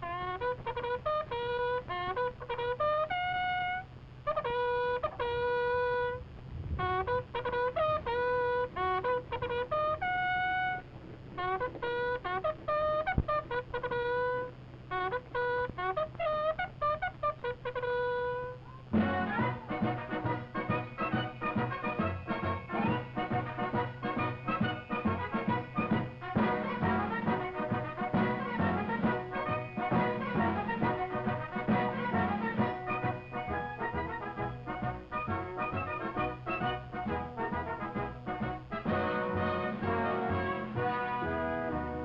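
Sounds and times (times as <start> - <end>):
bugle call: 0.0 - 6.2, 6.8 - 42.0
low soundtrack hum: 0.0 - 42.0
band music: 11.4 - 42.0.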